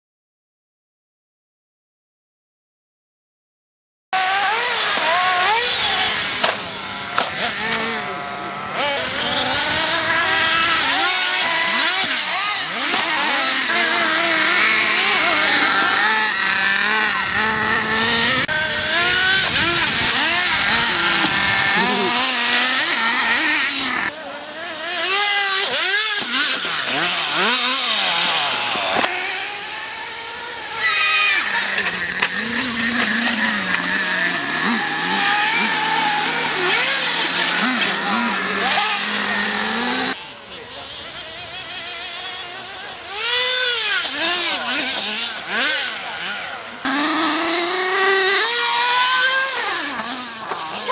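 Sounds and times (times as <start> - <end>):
rc car engines revving: 4.2 - 50.9.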